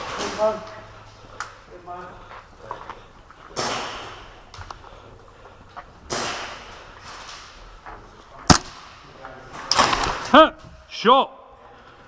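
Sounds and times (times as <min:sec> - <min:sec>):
sharp crack: 0:03.5 - 0:04.4, 0:06.1 - 0:07.6, 0:08.5 - 0:10.4.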